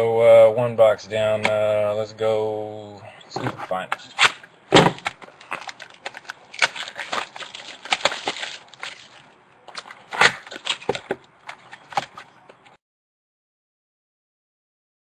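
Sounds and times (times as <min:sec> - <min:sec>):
packaging crinkling as torn open: 0:05.0 - 0:12.2.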